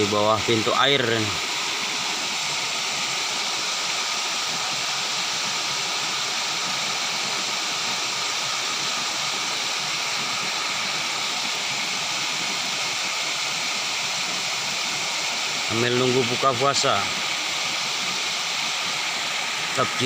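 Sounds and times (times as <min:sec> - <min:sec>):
water rushing through sluice gate: 0:00.0 - 0:20.0.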